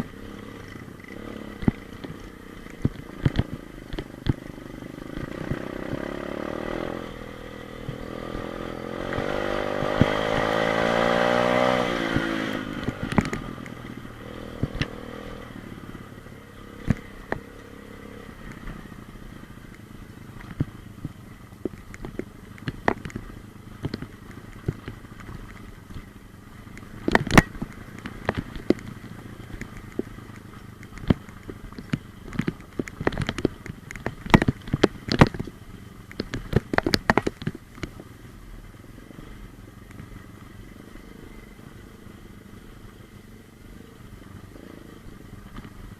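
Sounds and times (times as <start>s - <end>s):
motorcycle engine revving: 0.0s - 45.9s
sharp clicks and knocks: 0.7s - 4.5s, 11.6s - 15.0s, 16.8s - 17.5s, 20.4s - 26.1s, 26.7s - 38.1s.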